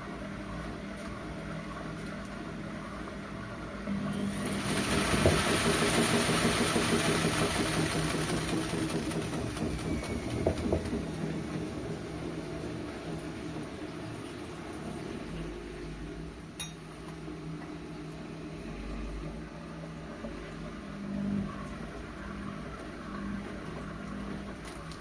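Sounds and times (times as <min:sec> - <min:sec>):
washing machine humming: 0:00.0 - 0:25.0
rushing hissing water: 0:04.2 - 0:09.1
knocks and rattles: 0:06.4 - 0:13.8.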